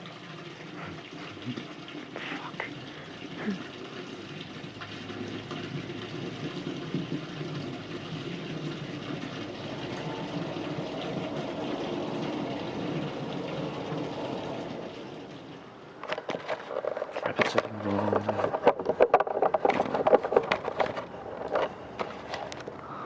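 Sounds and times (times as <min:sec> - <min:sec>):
aircraft engine rumble: 0:05.3 - 0:16.1.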